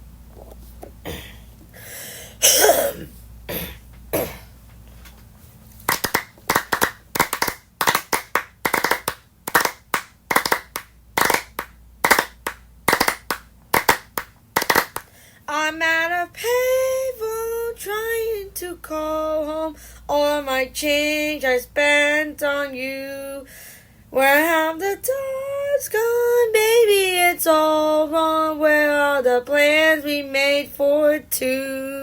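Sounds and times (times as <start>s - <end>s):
hand clapping: 5.9s - 15.1s.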